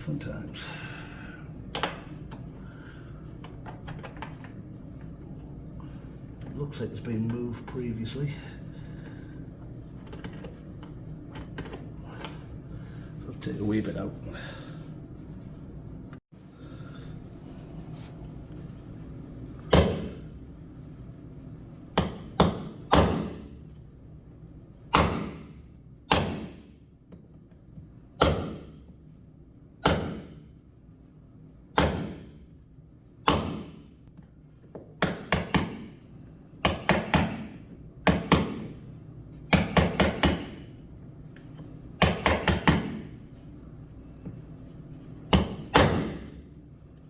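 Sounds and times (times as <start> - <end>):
hammer striking a chisel: 22.0 - 23.5, 24.9 - 25.5, 26.1 - 26.6, 28.2 - 28.8, 29.8 - 30.4, 31.8 - 32.3, 33.2 - 33.8, 35.0 - 35.9, 36.6 - 38.7, 39.5 - 40.6, 42.0 - 43.1, 45.3 - 46.3.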